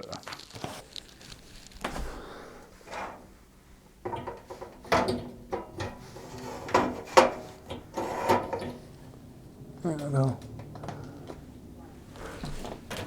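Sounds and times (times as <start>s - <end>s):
computer parts knocking and clicking: 4.0s - 6.0s
short sliding scrapes: 5.9s - 8.8s.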